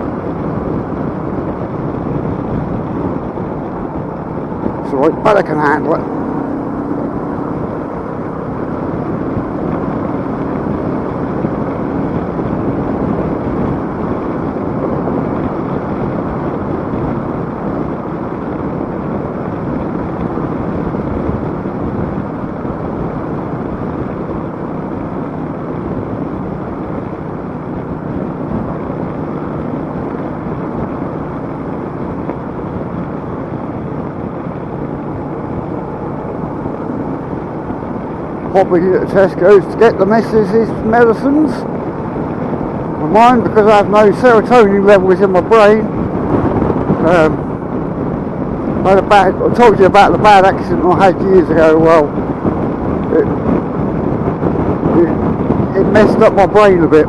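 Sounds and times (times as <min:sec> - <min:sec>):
motorcycle engine running: 0:00.0 - 0:57.0
wind and road noise: 0:00.0 - 0:57.0.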